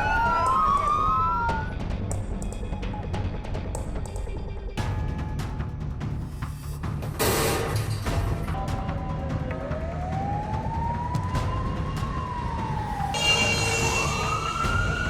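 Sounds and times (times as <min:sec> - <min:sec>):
siren wailing: 0:00.0 - 0:01.8, 0:08.5 - 0:15.0.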